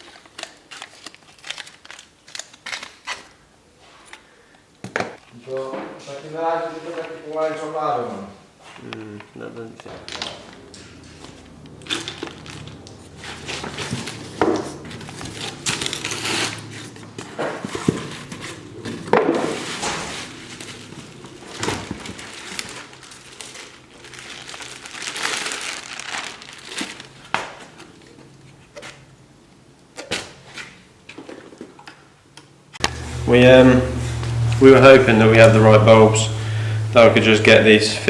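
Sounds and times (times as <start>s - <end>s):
plastic parts rustling and clicking: 0.0s - 3.4s, 9.8s - 29.0s.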